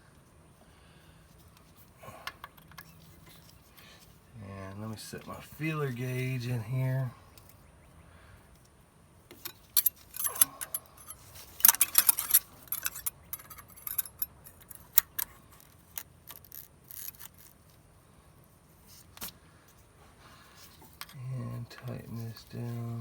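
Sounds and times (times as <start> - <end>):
metal hand tools clinking: 9.4 - 15.2.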